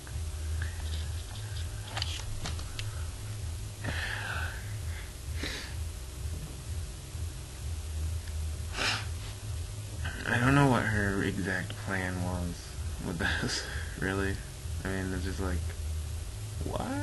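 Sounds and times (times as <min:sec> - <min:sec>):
low electrical hum: 0:00.0 - 0:17.0
person exhaling: 0:03.8 - 0:05.8, 0:08.7 - 0:09.1.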